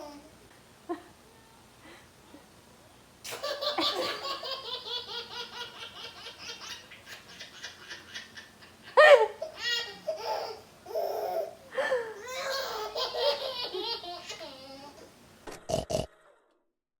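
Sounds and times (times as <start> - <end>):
baby laughing: 3.3 - 11.6, 12.2 - 15.1.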